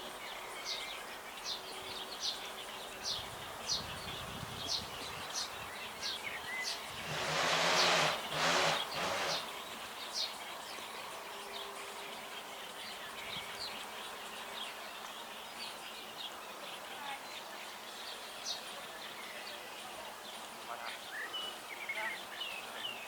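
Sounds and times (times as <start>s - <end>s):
sparrows chirping: 0.0s - 23.0s
loud rush of noise: 6.9s - 9.5s.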